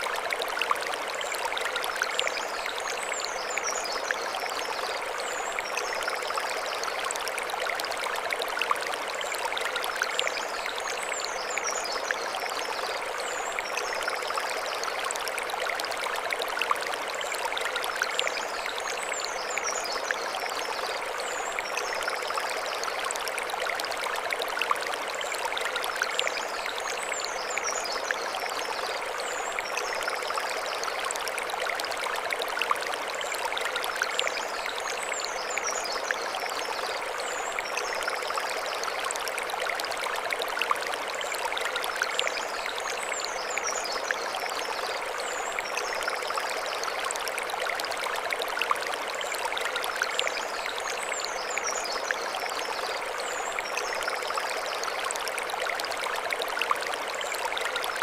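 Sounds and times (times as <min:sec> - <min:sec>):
stream flowing over stones: 0:00.0 - 0:58.0.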